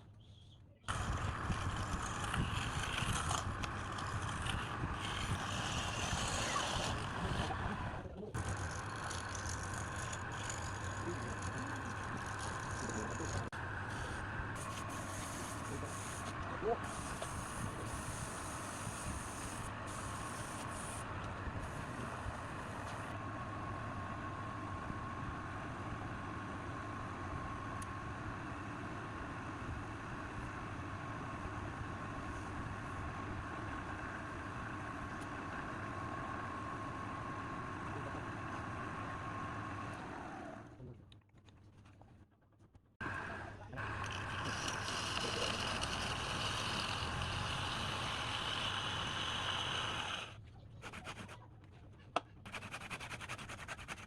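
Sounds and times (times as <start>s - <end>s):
woodworking power tool whirring: 0.9s - 23.2s, 43.1s - 51.3s
power tool motor whining: 43.8s - 50.4s.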